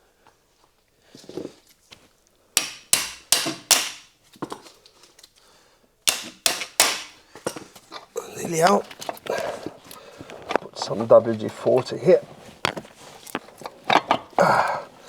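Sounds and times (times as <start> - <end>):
hammer striking metal driveshaft: 2.6 - 4.1, 6.1 - 7.2.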